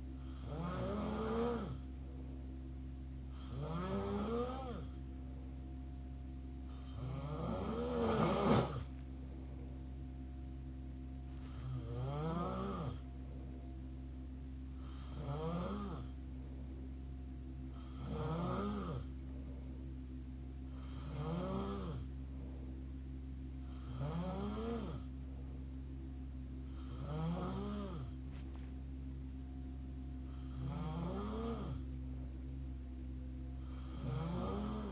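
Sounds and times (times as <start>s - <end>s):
steady background hum: 0.0s - 34.9s
person snoring: 0.2s - 1.9s, 3.3s - 5.0s, 6.7s - 8.9s, 11.4s - 13.1s, 14.8s - 16.2s, 17.7s - 19.1s, 20.7s - 22.1s, 23.6s - 25.1s, 26.7s - 28.2s, 30.3s - 31.8s, 33.6s - 34.9s.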